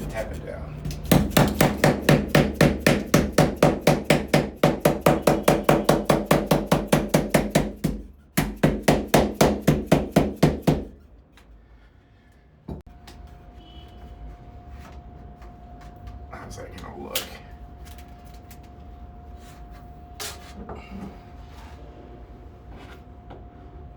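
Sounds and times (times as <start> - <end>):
rapid even tapping: 1.0 - 10.9.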